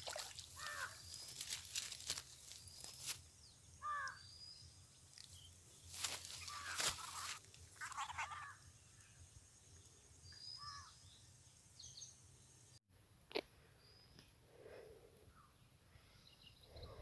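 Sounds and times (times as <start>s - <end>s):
crows cawing faintly: 0.6s - 1.0s, 3.8s - 4.2s, 6.4s - 8.6s
rustling noise: 1.1s - 3.2s, 5.9s - 7.7s.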